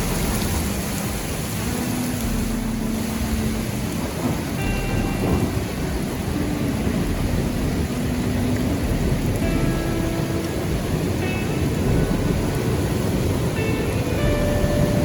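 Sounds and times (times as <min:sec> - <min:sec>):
heavy rain pouring: 0:00.0 - 0:15.0
low rumble: 0:02.2 - 0:13.6.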